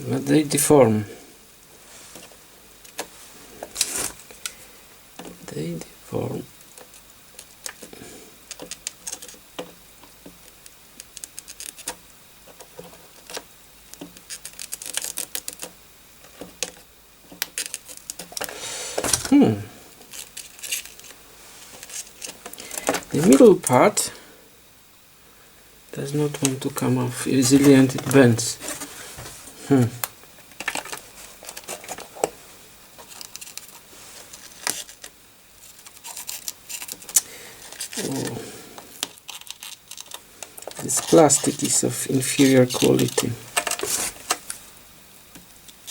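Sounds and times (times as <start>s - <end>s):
small tool clicking on plastic: 8.5s - 15.8s
scrapes and clicks: 30.4s - 32.3s.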